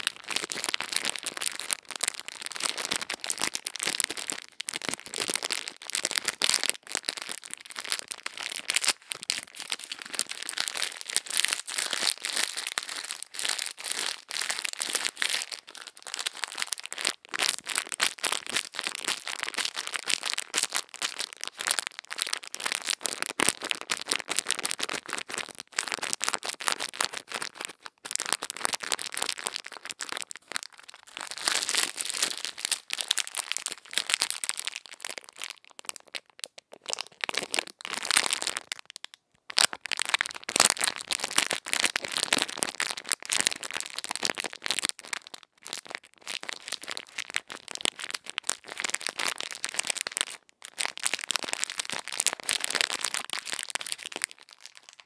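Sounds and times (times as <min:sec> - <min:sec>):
crisp crackling and scratching: 0:00.0 - 0:34.6.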